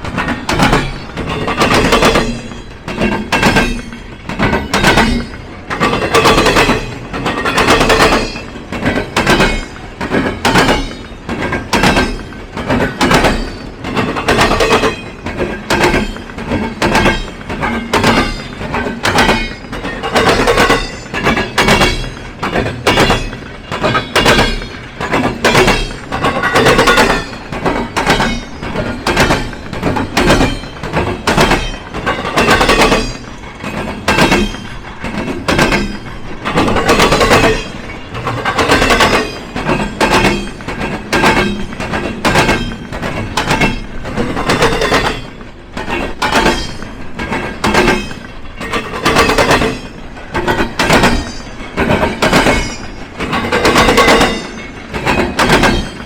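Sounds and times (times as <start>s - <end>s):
train wheels banging over crossing: 0.0s - 56.0s.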